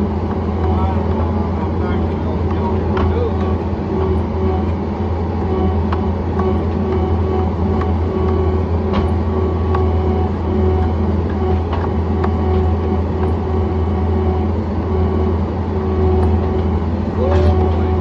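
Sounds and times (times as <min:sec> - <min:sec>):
diesel engine droning: 0:00.0 - 0:18.0
machine clicks and knocks: 0:02.4 - 0:04.8, 0:05.4 - 0:07.1.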